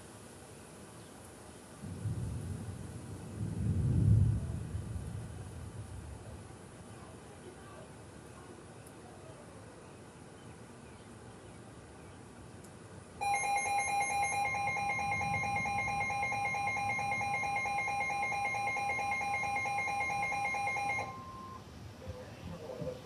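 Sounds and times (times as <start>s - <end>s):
two-tone electronic alarm: 13.2s - 21.7s.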